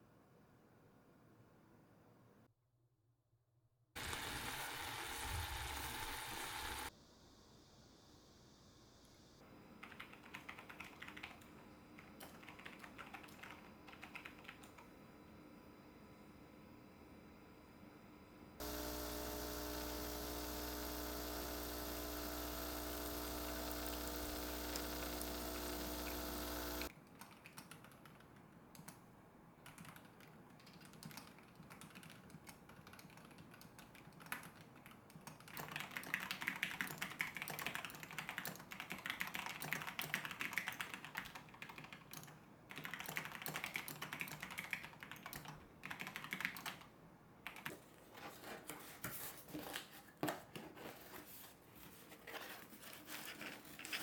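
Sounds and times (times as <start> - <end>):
steady hum with held tones: 4.0 - 9.9, 14.6 - 26.9
typing on mechanical keyboard: 9.8 - 14.8, 27.1 - 29.0, 29.6 - 47.8.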